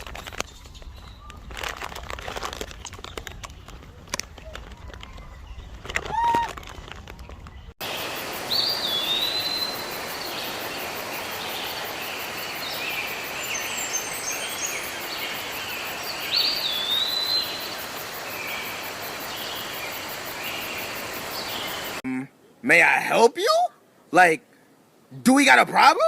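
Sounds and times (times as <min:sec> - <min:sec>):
outdoor background noise: 0:00.0 - 0:26.0
high chirping calls: 0:07.9 - 0:22.0.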